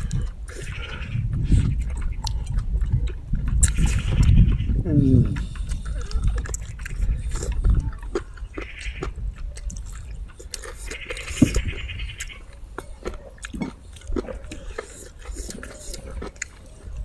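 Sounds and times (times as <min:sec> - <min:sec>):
small clicks of food: 0:00.0 - 0:04.4, 0:05.4 - 0:17.0
people chewing: 0:00.0 - 0:17.0.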